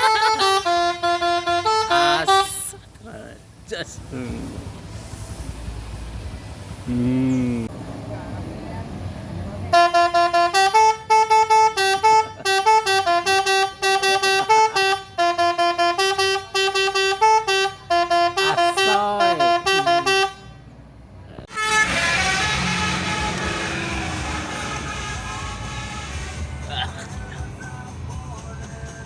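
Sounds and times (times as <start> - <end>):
bus horn playing a tune: 0.0 - 2.8, 9.7 - 20.7, 21.5 - 27.1.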